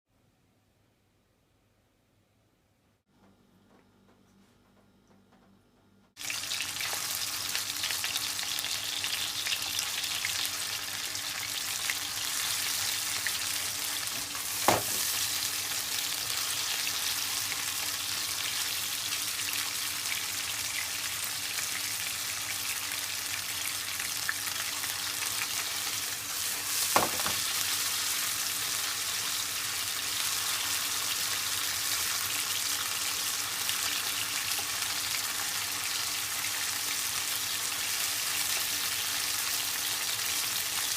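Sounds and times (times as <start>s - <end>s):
food sizzling in a frying pan: 6.2s - 40.9s
sharp knocks against a pan: 14.6s - 15.1s, 27.0s - 27.4s.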